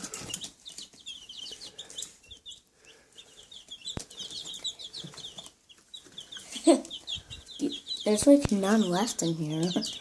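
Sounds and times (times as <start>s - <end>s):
baby chicks peeping: 0.0s - 10.0s.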